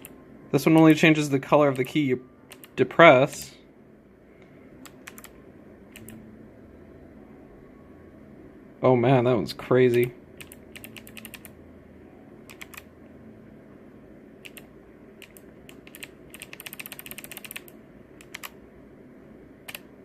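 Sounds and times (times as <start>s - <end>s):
mechanical keyboard keys clicking: 1.7s - 2.7s, 4.8s - 5.3s, 9.9s - 11.5s, 12.5s - 12.9s, 14.4s - 18.6s.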